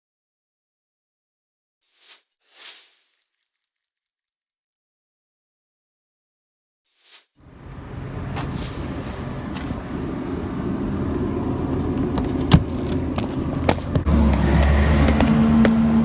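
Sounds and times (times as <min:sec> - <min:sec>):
car engine running: 0:07.4 - 0:16.0.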